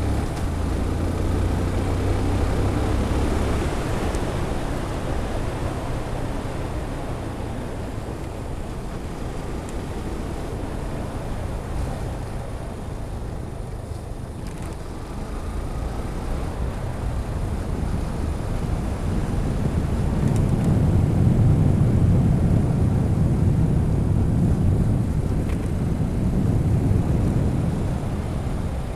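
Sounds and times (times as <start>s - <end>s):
wind buffeting microphone: 16.0s - 28.9s.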